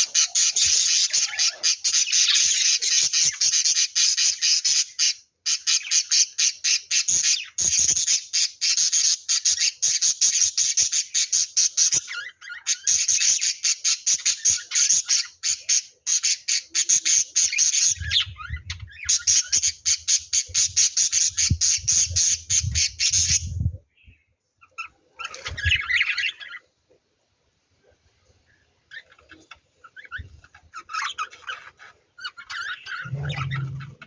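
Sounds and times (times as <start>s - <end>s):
birds chirping and squawking: 0.0s - 26.8s, 28.4s - 34.0s
low rumble: 33.0s - 34.0s.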